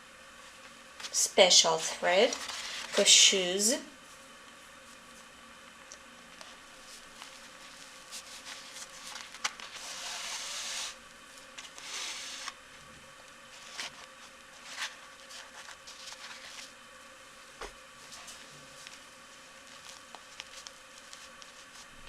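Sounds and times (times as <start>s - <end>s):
rustles and clicks of handling: 2.2s - 3.1s, 4.0s - 10.1s, 11.3s - 16.8s, 17.6s - 22.0s.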